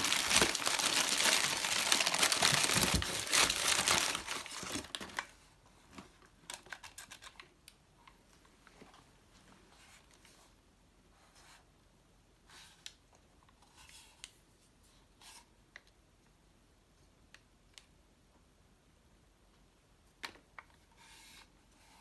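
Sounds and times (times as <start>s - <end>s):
packaging crumpling and tearing: 0.0s - 5.3s.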